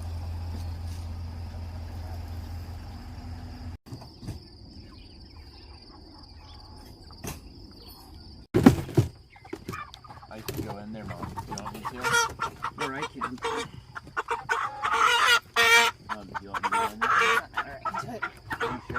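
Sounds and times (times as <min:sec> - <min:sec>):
low engine drone: 0:00.0 - 0:03.8.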